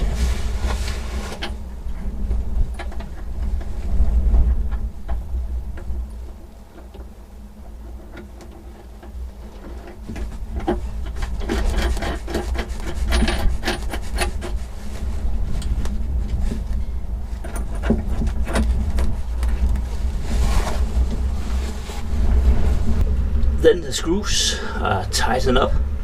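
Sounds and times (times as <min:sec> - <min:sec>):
steady low rumble: 0:00.0 - 0:26.0
hands rubbing and scraping: 0:09.5 - 0:16.8, 0:17.4 - 0:23.1.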